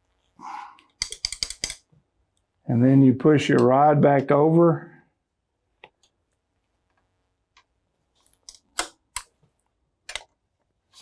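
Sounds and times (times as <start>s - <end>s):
small metallic clicks and taps: 1.0s - 1.9s, 8.4s - 9.3s.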